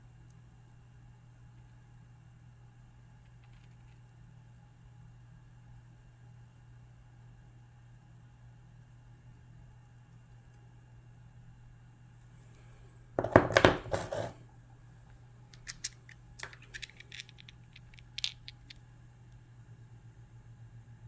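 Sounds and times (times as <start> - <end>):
faint low hum: 0.0 - 21.0
rock scraping: 13.2 - 14.4
stone clicking on hard surface: 15.6 - 18.8.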